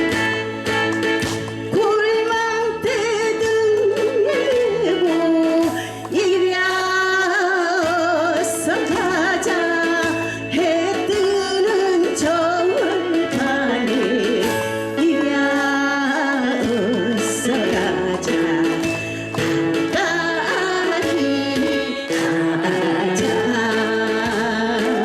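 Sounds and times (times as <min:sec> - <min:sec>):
backing track with bass: 0:00.0 - 0:05.3
person singing with vibrato: 0:01.7 - 0:25.0.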